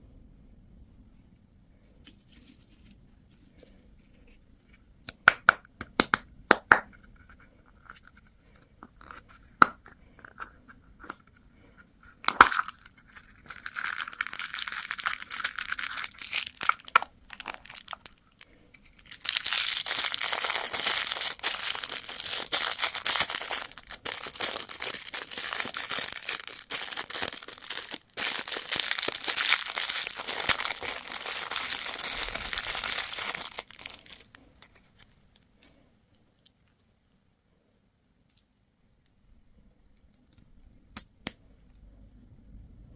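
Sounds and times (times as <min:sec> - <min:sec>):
candy wrappers crinkling: 0:12.0 - 0:36.8.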